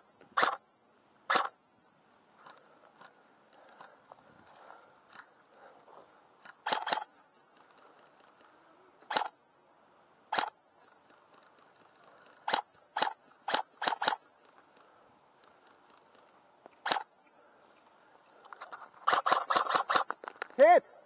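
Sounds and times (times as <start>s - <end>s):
airsoft gun shots: 6.6s - 7.1s, 9.1s - 9.3s, 12.5s - 14.2s, 19.1s - 20.1s.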